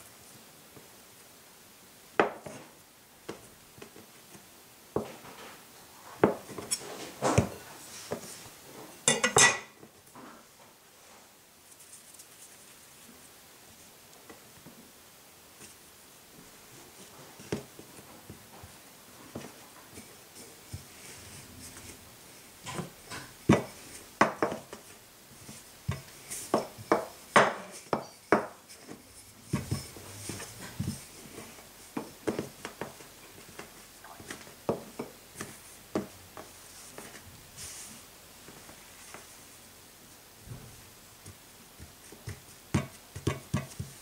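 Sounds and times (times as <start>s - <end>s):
kitchen knocks and taps: 42.2s - 44.0s.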